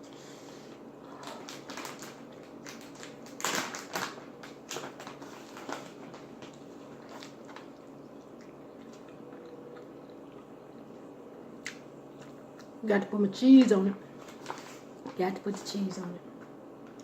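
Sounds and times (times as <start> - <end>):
crisp crackles from chewing: 1.1 - 11.0.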